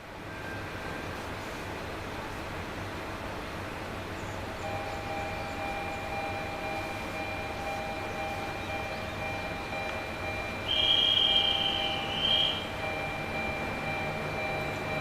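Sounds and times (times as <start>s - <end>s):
diesel train engines rumbling: 0.0s - 15.0s
steady ringing tones: 4.6s - 15.0s.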